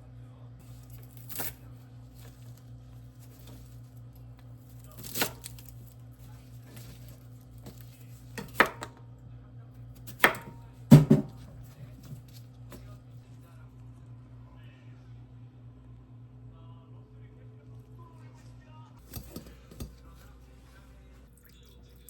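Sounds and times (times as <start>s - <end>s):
steady low hum: 0.0s - 22.0s
knife knocking on cutting board: 10.2s - 11.5s.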